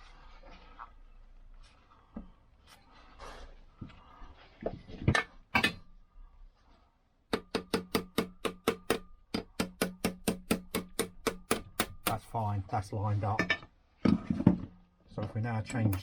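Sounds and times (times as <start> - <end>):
hammer tapping metal: 7.3 - 12.4
ringing metal taps: 7.3 - 12.4
sharp knocks: 7.3 - 12.4.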